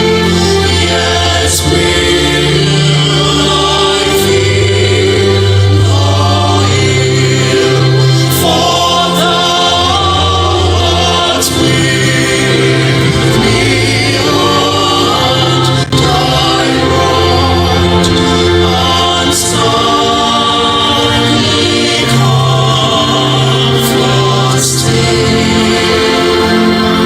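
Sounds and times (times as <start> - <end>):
choir singing gospel: 0.0 - 27.0
sustained bass notes: 0.0 - 27.0.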